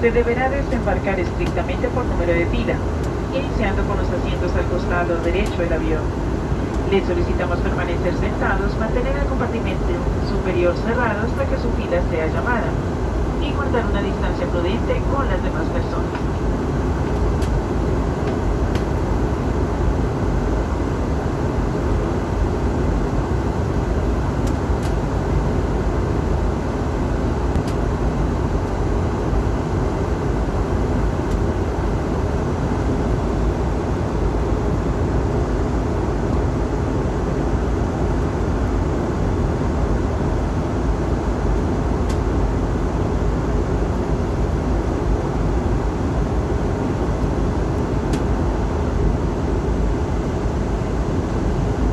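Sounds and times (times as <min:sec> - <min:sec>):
airplane cabin engine rumble: 0:00.0 - 0:51.9.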